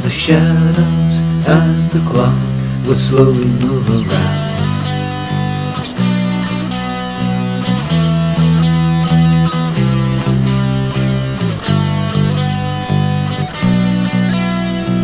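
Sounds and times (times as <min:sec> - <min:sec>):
alt-folk music with singing: 0:00.0 - 0:05.2
bass line: 0:00.0 - 0:15.0
guitars playing chords: 0:00.0 - 0:15.0.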